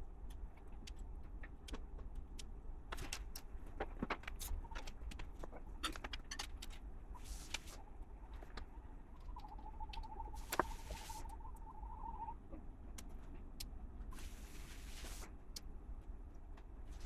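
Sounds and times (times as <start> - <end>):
faint wavering tone: 7.2 - 12.4.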